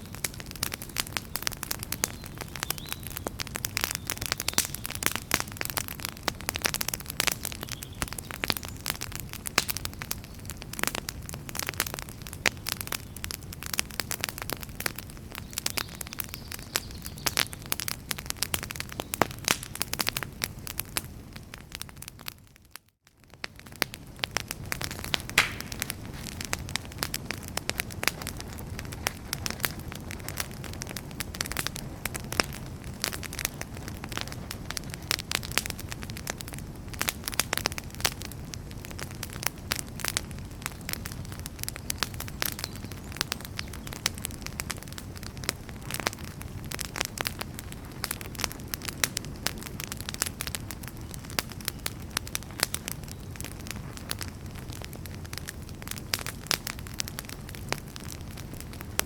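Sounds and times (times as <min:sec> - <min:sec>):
low rumble of flames: 0:00.0 - 0:59.0
wood fire crackling and popping: 0:00.0 - 0:59.0.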